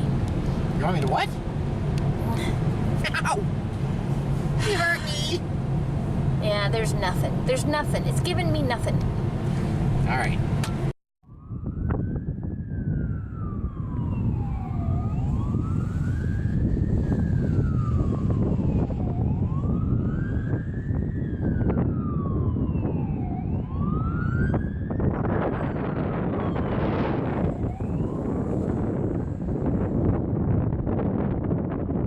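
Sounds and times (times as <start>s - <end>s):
car rumbling on road: 0.0s - 32.0s
emergency siren wailing: 11.2s - 31.9s.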